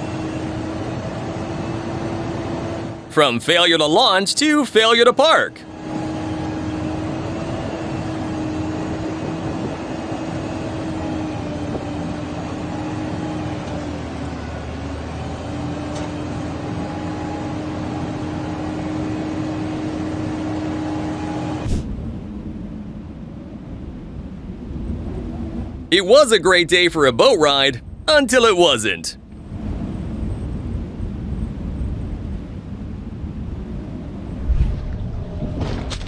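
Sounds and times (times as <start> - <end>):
low rumble: 34.2 - 35.8.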